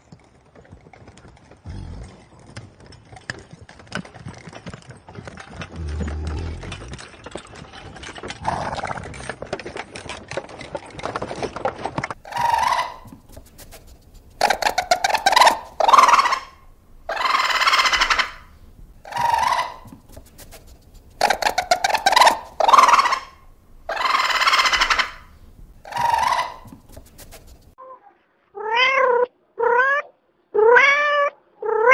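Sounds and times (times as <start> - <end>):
crackling rustle: 5.4 - 27.8
animal harsh calls: 12.2 - 31.9.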